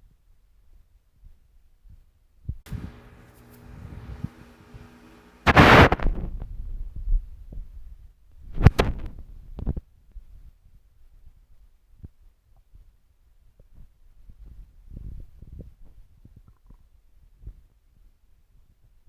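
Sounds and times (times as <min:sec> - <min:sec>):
stomach growling: 0:15.6 - 0:16.9.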